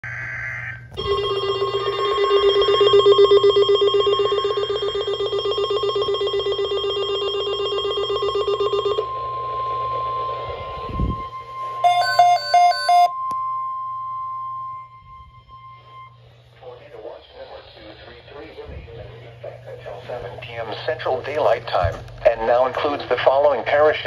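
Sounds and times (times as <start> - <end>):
buzzy pulsing alarm tone: 0.0 - 19.4
steady high tone: 0.8 - 19.0.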